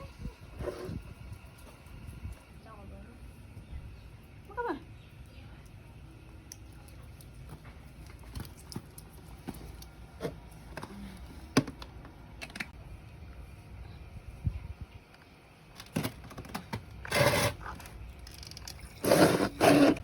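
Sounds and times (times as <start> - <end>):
steady low rumble: 12.7 - 15.7.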